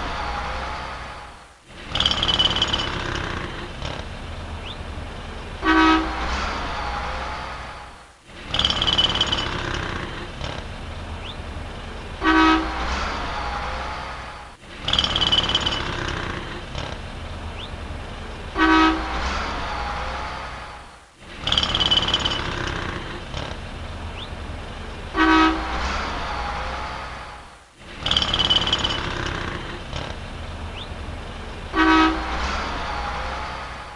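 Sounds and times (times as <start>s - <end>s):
city street traffic: 0.0s - 33.9s
car horn honking: 5.6s - 6.4s, 12.2s - 12.9s, 18.5s - 19.2s, 25.1s - 25.9s, 31.7s - 33.6s.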